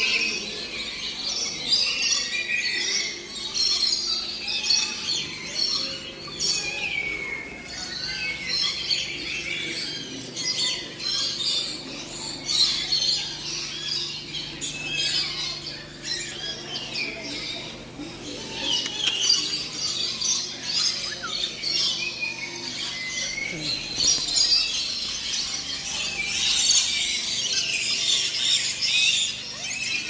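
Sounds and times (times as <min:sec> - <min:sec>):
birds chirping and squawking: 0:00.0 - 0:30.0.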